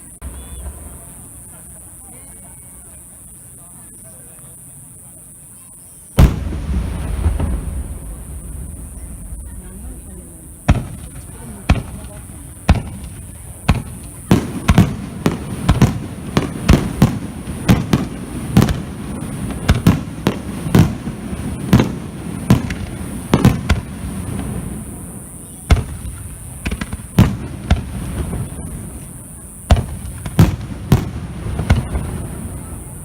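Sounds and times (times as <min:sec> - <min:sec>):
fireworks bursting: 0:00.0 - 0:33.0.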